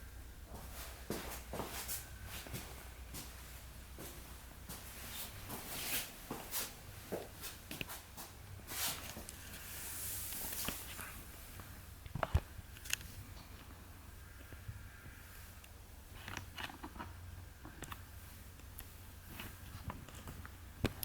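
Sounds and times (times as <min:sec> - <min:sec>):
soft rustling hiss: 0:00.0 - 0:21.0.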